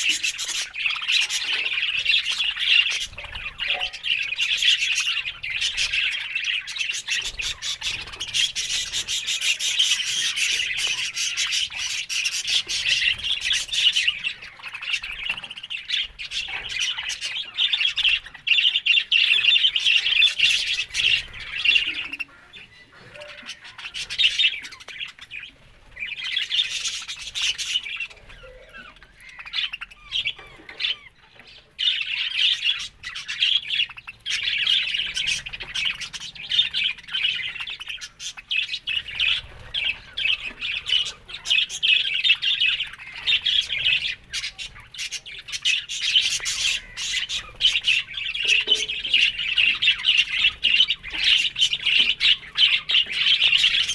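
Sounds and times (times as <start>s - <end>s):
budgerigars chattering and squawking: 0.0s - 53.9s.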